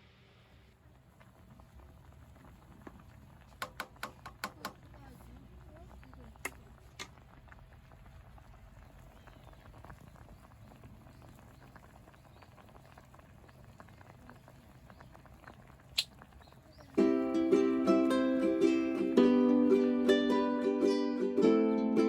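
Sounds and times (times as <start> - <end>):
light patter and ticks: 1.0 - 17.0
ukulele background music: 17.0 - 22.0.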